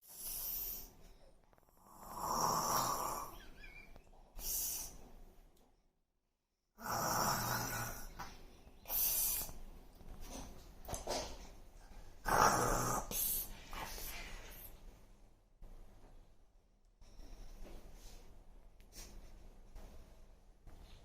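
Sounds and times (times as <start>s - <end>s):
girl snoring: 1.8s - 3.4s, 6.8s - 8.3s, 12.2s - 13.5s.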